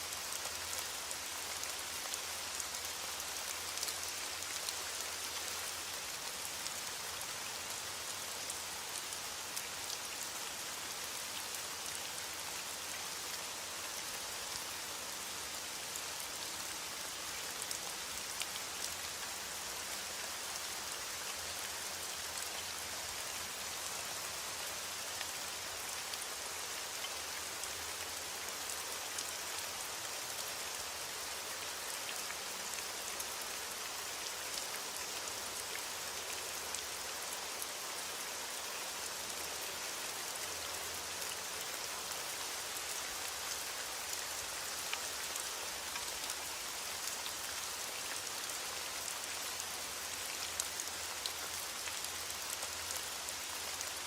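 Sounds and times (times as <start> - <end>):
steady rain hissing: 0.0 - 54.0
raindrops ticking on a surface: 32.0 - 54.0.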